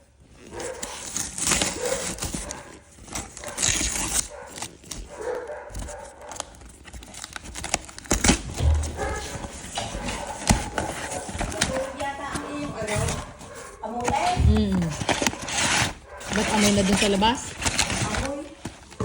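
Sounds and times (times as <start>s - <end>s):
sharp clicks and rustles: 0.2s - 19.0s
dog barking: 0.4s - 6.6s, 8.6s - 17.1s.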